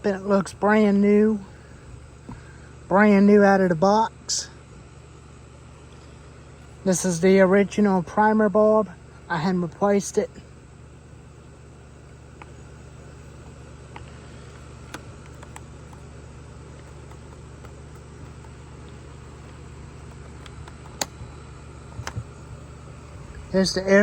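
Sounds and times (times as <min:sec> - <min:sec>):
low background hum with hiss: 0:00.0 - 0:24.0
soft clicks: 0:13.9 - 0:16.0, 0:16.7 - 0:21.4.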